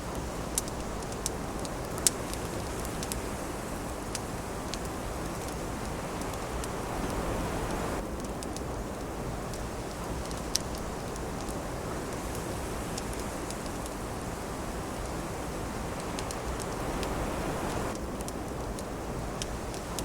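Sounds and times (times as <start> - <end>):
wood fire crackling: 0.0 - 20.0
fire pops: 0.1 - 20.0
wind rushing: 5.5 - 8.0, 13.8 - 18.0.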